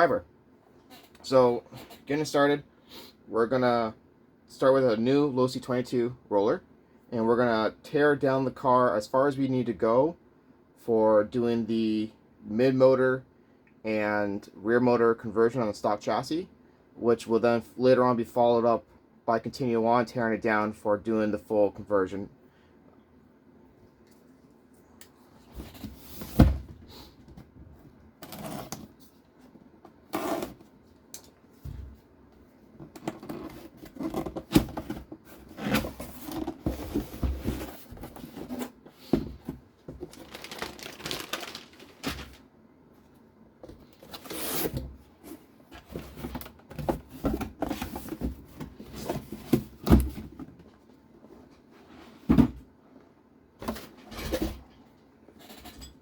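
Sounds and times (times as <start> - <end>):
hands handling toy car packaging: 40.0 - 42.4.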